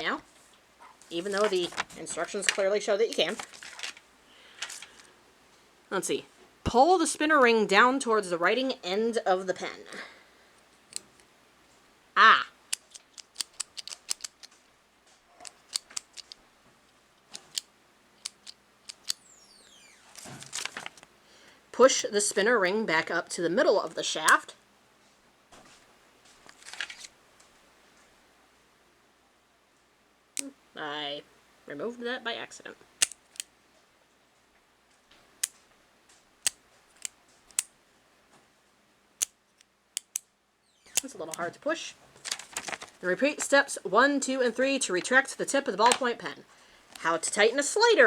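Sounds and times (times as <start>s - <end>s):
small metal parts clicking: 12.7s - 14.6s, 15.4s - 16.4s, 17.3s - 19.2s, 36.4s - 37.7s.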